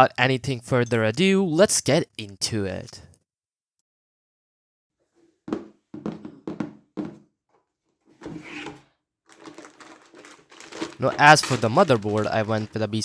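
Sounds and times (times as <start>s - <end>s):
knocks and thuds: 5.5s - 7.2s.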